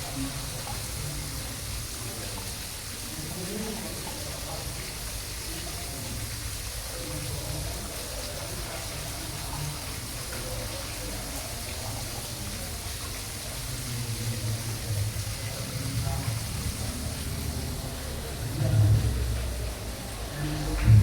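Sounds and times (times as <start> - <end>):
aquarium water rushing: 0.0 - 21.0
faint indistinct voices: 0.0 - 21.0.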